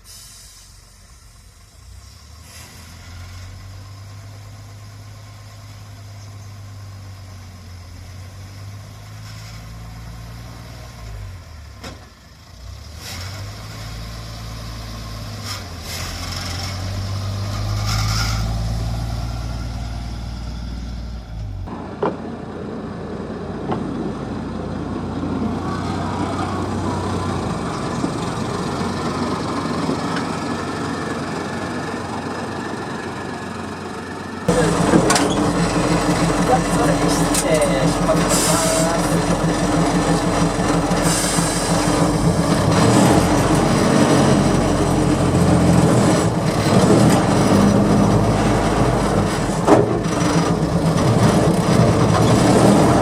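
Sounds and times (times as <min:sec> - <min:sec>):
engine revving: 0:12.5 - 0:33.8, 0:34.4 - 0:53.0
car rolling on rails: 0:21.2 - 0:53.0.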